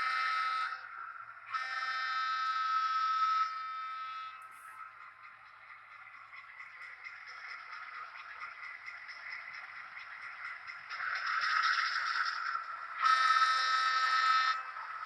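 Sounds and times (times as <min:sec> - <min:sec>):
model train electronic horn: 0:00.0 - 0:05.3, 0:10.9 - 0:15.0
model train running: 0:00.0 - 0:15.0.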